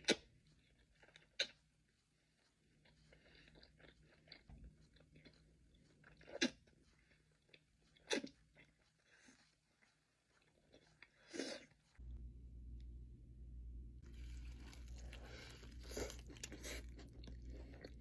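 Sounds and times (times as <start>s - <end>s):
chewing and mouth clicks: 0.0s - 11.8s, 14.1s - 18.0s.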